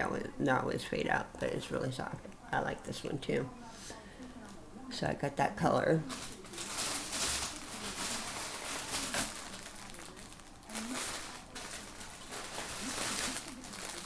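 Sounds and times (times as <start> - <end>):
yarn packaging rustling and crinkling: 6.0 - 14.0.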